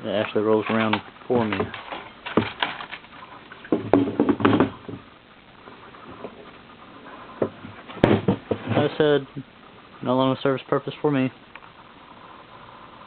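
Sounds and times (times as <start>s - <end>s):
clattering knocks: 3.7s - 5.1s, 7.4s - 8.8s.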